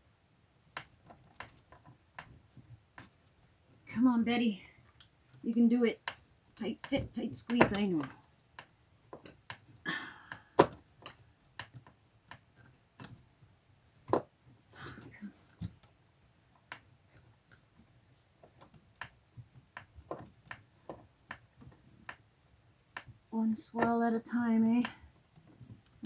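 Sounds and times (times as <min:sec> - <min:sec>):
sharp clicks and taps: 0:05.9 - 0:09.6.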